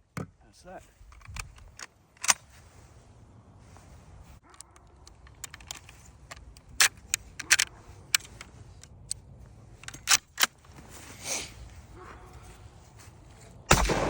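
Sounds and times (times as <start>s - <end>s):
metallic rifle clicks and clacks: 1.1s - 2.4s, 4.4s - 10.7s.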